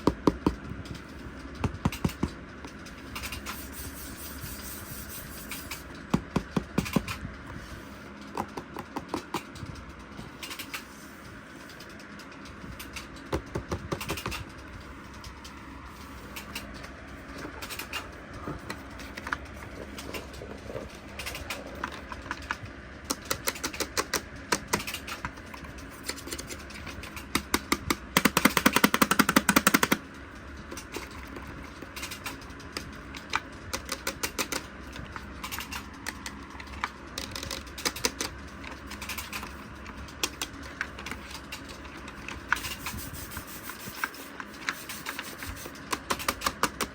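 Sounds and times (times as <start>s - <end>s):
plastic toy clicking and rattling: 11.6s - 15.6s, 18.7s - 43.0s, 44.0s - 46.9s.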